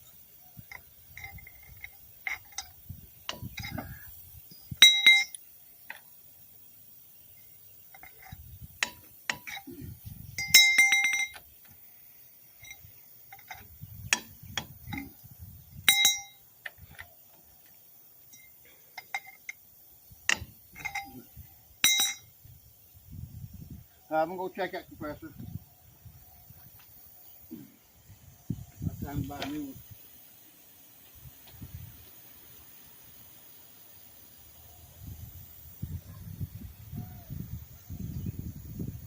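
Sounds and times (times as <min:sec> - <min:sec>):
metal tools clinking and knocking: 0:00.6 - 0:04.0, 0:04.8 - 0:06.0, 0:07.9 - 0:11.8, 0:12.6 - 0:15.2, 0:15.8 - 0:17.1, 0:18.2 - 0:19.6, 0:20.2 - 0:22.4
sharp ringing metal clangs: 0:04.8 - 0:05.4, 0:10.4 - 0:11.4, 0:15.9 - 0:16.4, 0:20.3 - 0:22.4.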